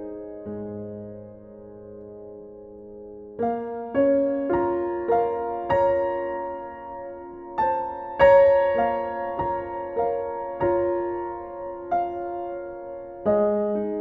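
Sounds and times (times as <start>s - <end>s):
slow gentle piano music: 0.0s - 14.0s.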